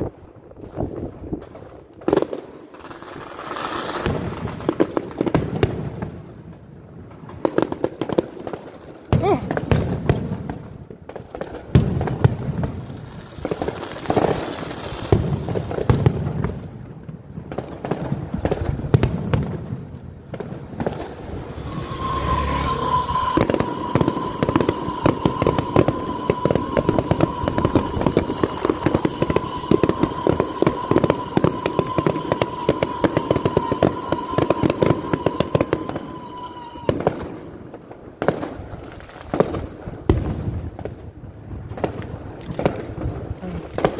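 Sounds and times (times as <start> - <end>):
fireworks bangs and crackles: 0.0 - 43.9
steady high whistle: 20.9 - 37.1.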